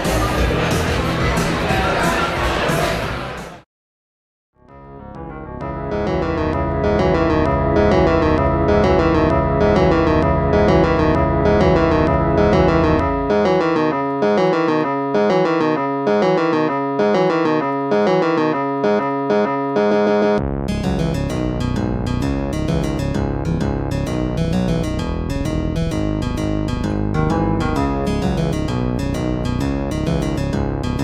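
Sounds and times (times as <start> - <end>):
keyboard tune of repeated chords: 4.6 - 31.0.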